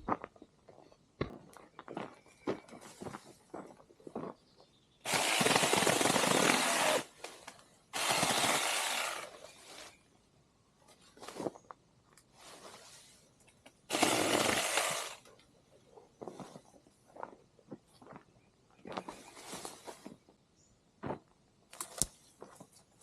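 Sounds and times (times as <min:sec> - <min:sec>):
mini chainsaw cutting branches: 0:05.1 - 0:09.9, 0:13.9 - 0:15.3
branches snapping and rustling: 0:21.7 - 0:22.6.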